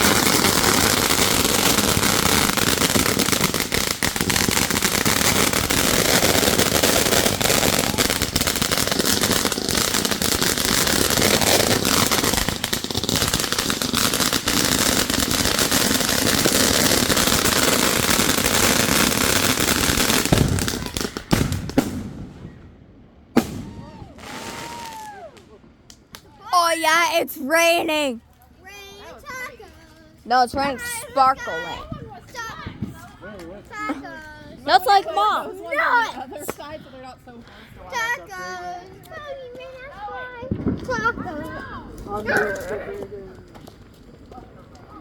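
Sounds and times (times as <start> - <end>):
fireworks crackling and popping: 0.0 - 22.7, 23.3 - 28.3, 29.0 - 35.2, 38.0 - 45.0
loud firework bangs: 0.0 - 25.3.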